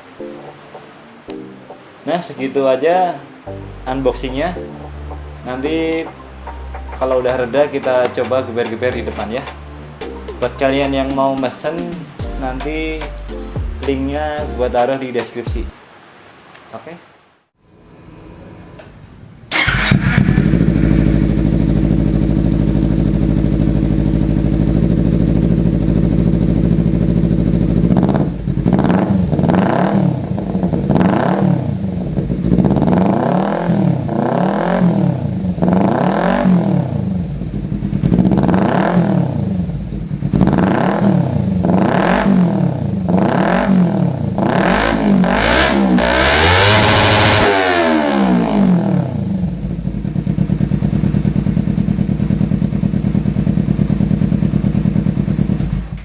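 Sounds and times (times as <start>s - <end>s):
motorcycle engine idling and revving: 19.5s - 56.0s.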